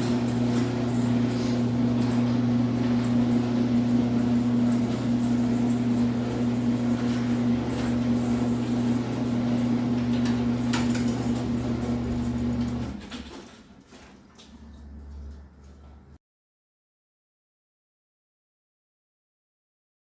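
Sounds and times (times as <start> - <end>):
garage door opener motor humming: 0.0 - 16.2
light clicks of garage door: 0.0 - 16.2.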